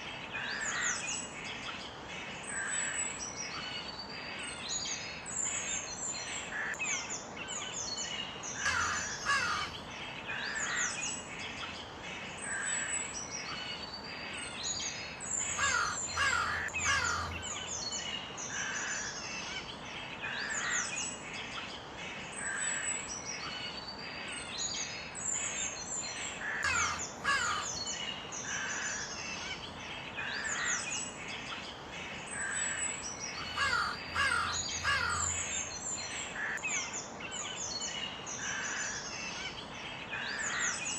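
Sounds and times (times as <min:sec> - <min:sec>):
small birds chirping: 0:00.0 - 0:40.9
crows cawing: 0:06.5 - 0:06.8, 0:08.6 - 0:09.7, 0:15.5 - 0:17.6, 0:18.5 - 0:19.2, 0:26.4 - 0:27.8, 0:33.4 - 0:35.5, 0:36.4 - 0:36.6.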